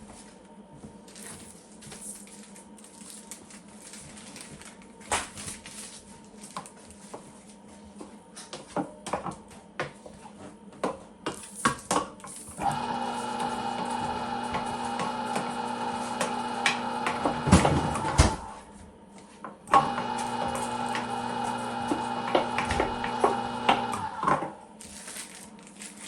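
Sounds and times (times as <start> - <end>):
electric motor humming: 12.6 - 18.6, 19.7 - 24.6.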